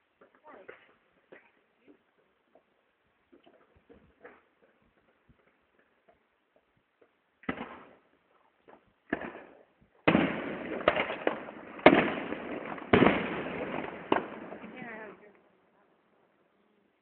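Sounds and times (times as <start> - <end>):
firework bangs: 7.4 - 8.0, 9.0 - 15.4
booming firework bursts: 9.1 - 15.3
firework crackle: 9.1 - 15.4.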